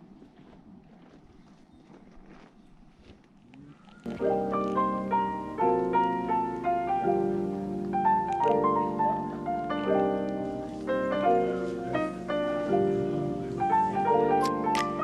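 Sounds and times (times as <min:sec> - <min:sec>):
gentle piano instrumental: 0:04.0 - 0:15.0.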